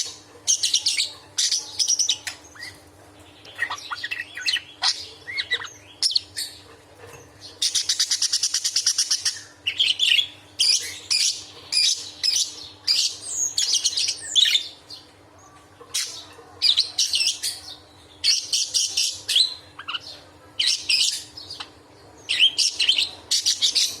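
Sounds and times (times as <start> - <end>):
budgerigar chattering: 3.5 - 6.3.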